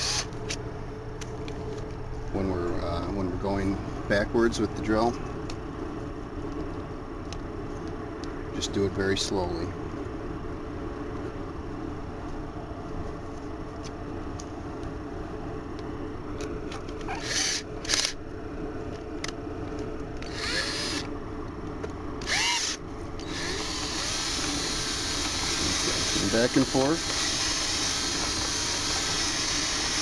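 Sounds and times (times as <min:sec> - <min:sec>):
power drill spinning brush: 0:00.0 - 0:00.3, 0:17.1 - 0:18.0, 0:20.2 - 0:21.1, 0:22.2 - 0:30.0.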